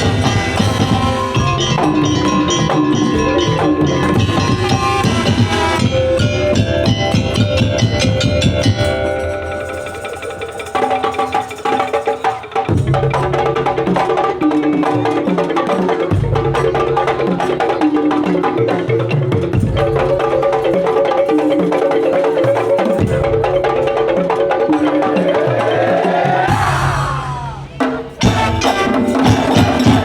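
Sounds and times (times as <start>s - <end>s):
pitched melodic line: 0.0s - 12.1s
percussion ensemble playing: 0.0s - 30.0s
wooden slit-drum strikes: 0.0s - 30.0s.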